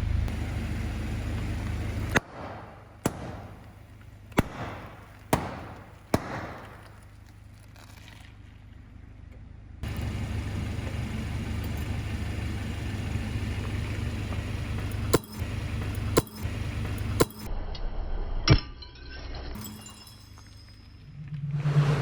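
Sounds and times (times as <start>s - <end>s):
car engine running: 0.0s - 6.8s, 9.6s - 17.5s, 19.6s - 21.7s
objects cracking under tyres: 1.6s - 9.0s.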